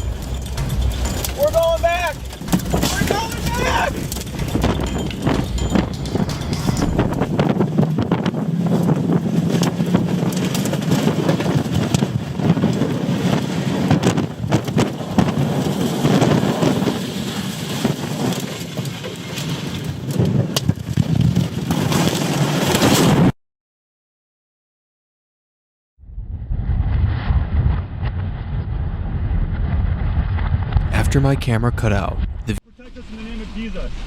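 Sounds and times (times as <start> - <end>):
low engine hum: 0.0 - 11.5
heavy rain battering a vehicle: 0.0 - 20.4
wind: 0.0 - 23.3, 26.0 - 34.0.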